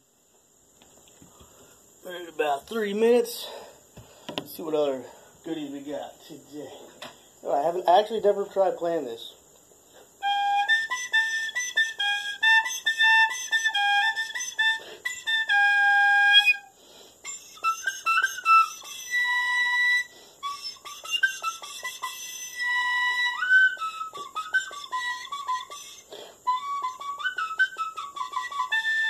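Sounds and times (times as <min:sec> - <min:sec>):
whistle notes: 0:10.2 - 0:29.0.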